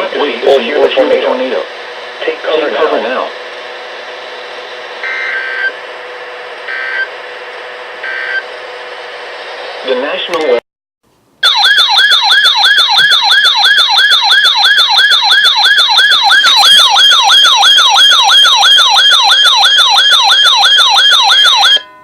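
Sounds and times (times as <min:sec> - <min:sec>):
electronic siren yelping: 0:05.0 - 0:05.8, 0:06.6 - 0:07.2, 0:08.0 - 0:08.5, 0:11.4 - 0:22.0.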